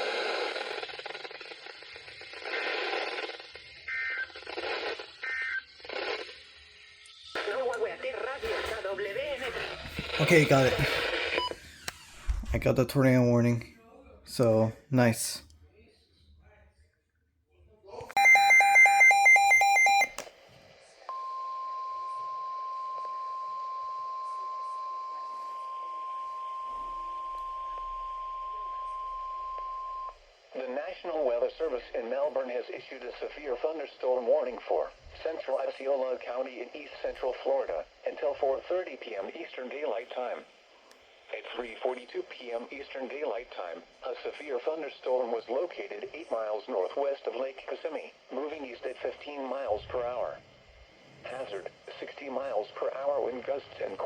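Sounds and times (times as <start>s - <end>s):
radio hiss: 0.0s - 13.6s, 30.4s - 54.0s
rapid pulsed alarm beeps: 18.2s - 20.2s, 21.1s - 30.2s.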